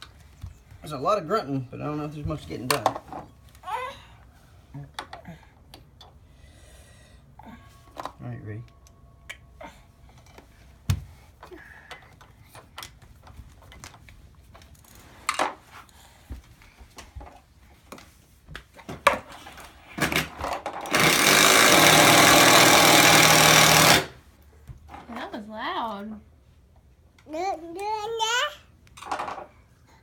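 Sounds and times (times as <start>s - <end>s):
power drill running: 20.8s - 24.2s.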